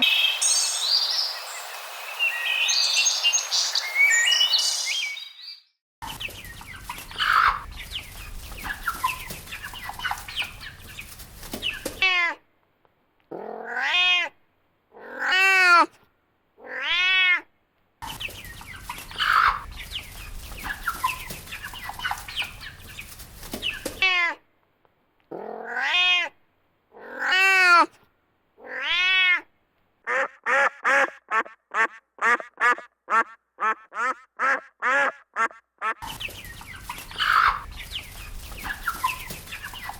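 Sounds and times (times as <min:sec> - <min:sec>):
background noise: 0:00.0 - 0:05.2, 0:06.0 - 0:39.9
cat meowing: 0:13.3 - 0:14.4, 0:16.6 - 0:17.5, 0:25.3 - 0:26.4, 0:28.6 - 0:29.5.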